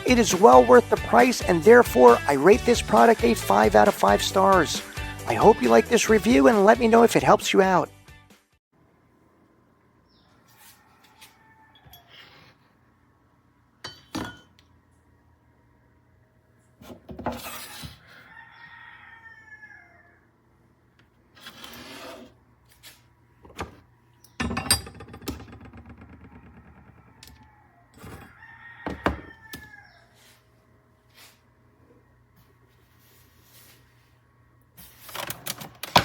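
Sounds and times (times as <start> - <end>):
rooster crowing: 10.5 - 12.2, 18.0 - 20.4, 26.3 - 30.4.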